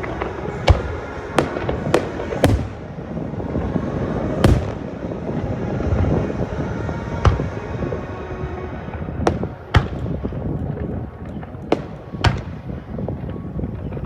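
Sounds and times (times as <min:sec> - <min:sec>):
firework shells bursting: 0:00.0 - 0:03.6, 0:04.3 - 0:05.3, 0:09.3 - 0:10.5, 0:11.3 - 0:12.8.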